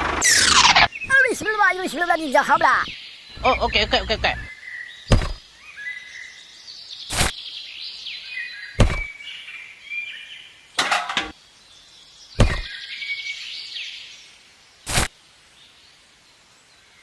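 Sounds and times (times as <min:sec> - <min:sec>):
birds chirping: 0:00.0 - 0:14.0
sharp knocks: 0:05.1 - 0:05.4, 0:08.8 - 0:09.1, 0:12.4 - 0:12.7.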